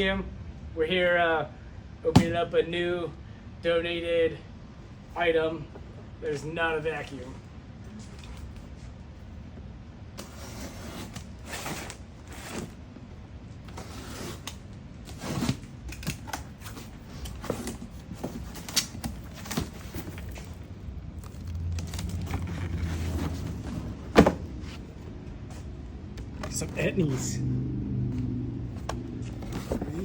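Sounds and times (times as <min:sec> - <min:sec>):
cardboard box rustling and creaking: 0:13.6 - 0:25.6, 0:28.7 - 0:30.0.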